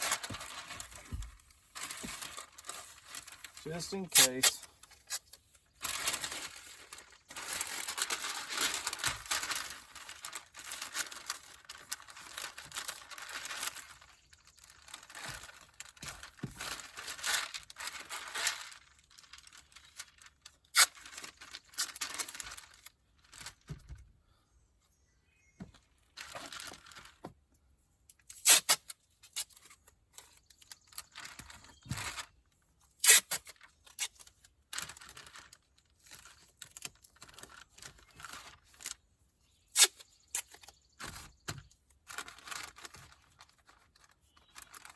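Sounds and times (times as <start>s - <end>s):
paper crinkling: 0.0s - 23.8s, 26.0s - 27.3s, 29.2s - 39.0s, 39.6s - 44.9s
tape pulled off roll and torn: 4.2s - 23.8s, 28.2s - 32.3s, 33.0s - 39.0s, 39.7s - 44.9s.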